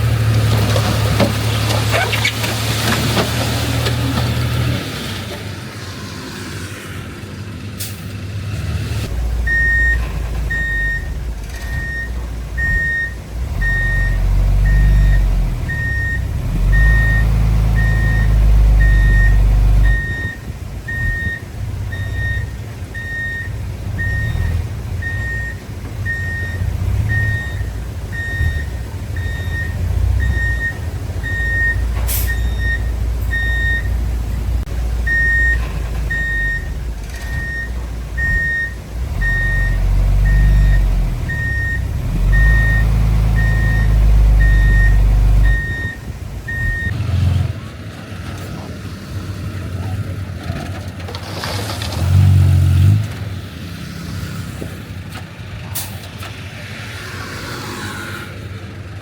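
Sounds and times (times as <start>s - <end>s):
diesel machinery engine rumble: 0.0s - 56.9s
reversing alarm beeping: 9.5s - 34.0s, 35.1s - 47.0s.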